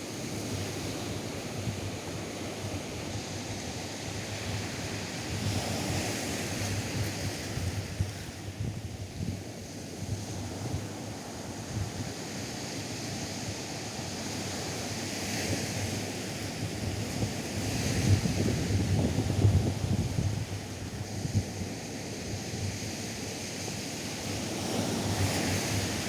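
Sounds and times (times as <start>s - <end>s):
wind buffeting microphone: 16.8s - 21.7s.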